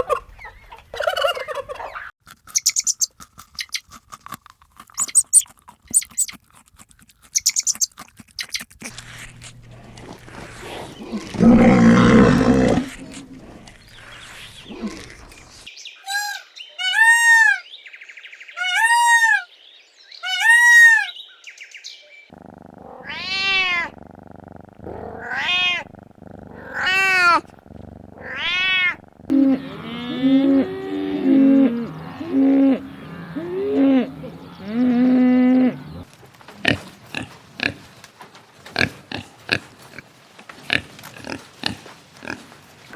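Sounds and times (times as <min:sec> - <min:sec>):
loud low animal call: 0:28.1 - 0:36.1
lower overlapping animal calls: 0:28.2 - 0:36.1.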